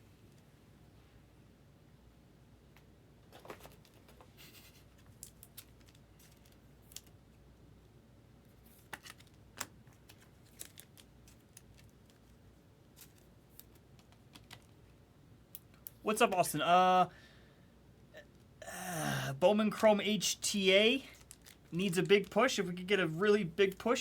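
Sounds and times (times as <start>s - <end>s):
trading cards being handled: 3.3s - 7.2s, 8.5s - 15.0s, 21.0s - 24.0s.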